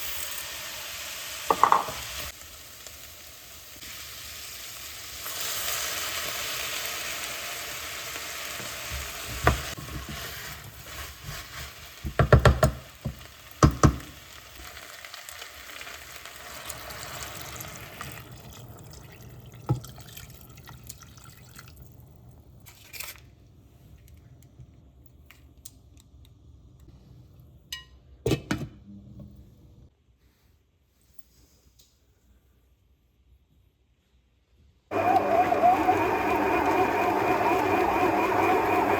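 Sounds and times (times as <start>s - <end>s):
food sizzling in a hot pan: 0.0s - 18.1s.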